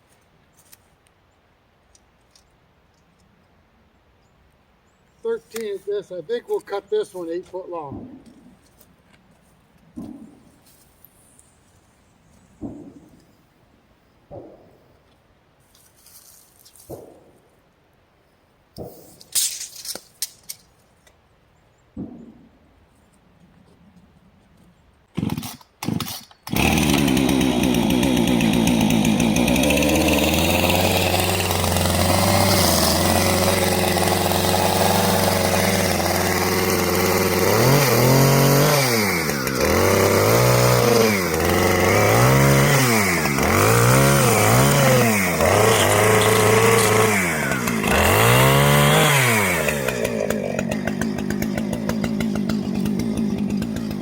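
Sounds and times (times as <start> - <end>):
chainsaw cutting a log: 25.1 - 54.0.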